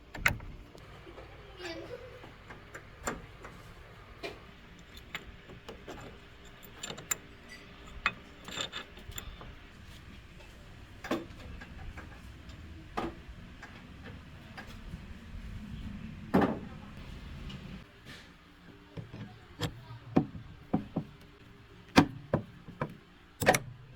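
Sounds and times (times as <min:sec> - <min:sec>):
tools and metal parts clicking: 0:02.4 - 0:12.6, 0:22.6 - 0:23.8.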